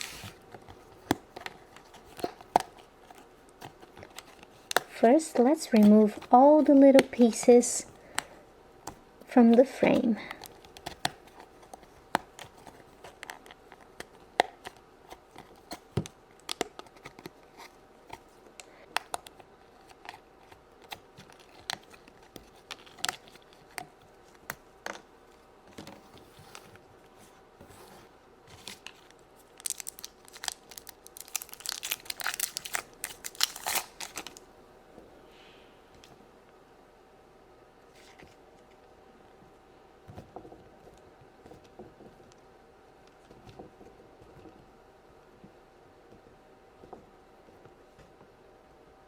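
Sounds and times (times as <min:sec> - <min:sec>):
cardboard crinkling: 0:00.0 - 0:08.2, 0:25.3 - 0:34.4.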